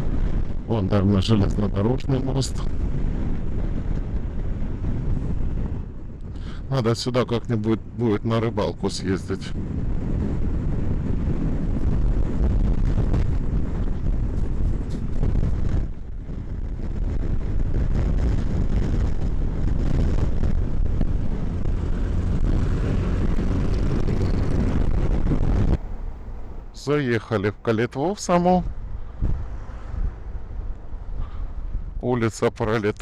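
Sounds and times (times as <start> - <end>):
wind buffeting microphone: 0.0 - 33.0
car driving: 9.4 - 32.1.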